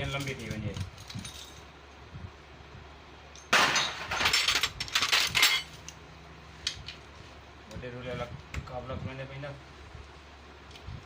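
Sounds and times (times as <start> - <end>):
metal tools clattering: 0.0 - 1.7, 3.4 - 5.9.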